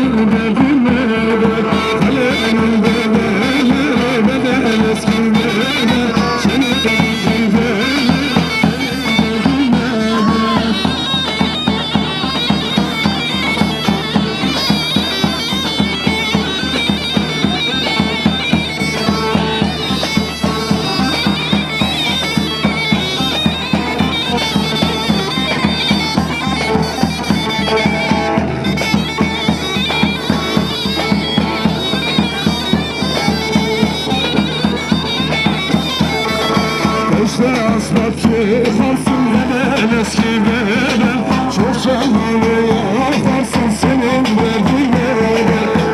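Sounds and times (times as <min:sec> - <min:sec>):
steady drum beat: 0:00.0 - 0:45.9
shrill reed wind instrument: 0:01.6 - 0:37.6.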